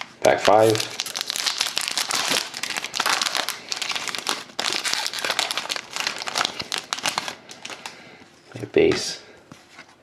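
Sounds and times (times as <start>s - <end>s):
wrapper crinkling: 0.0s - 8.0s.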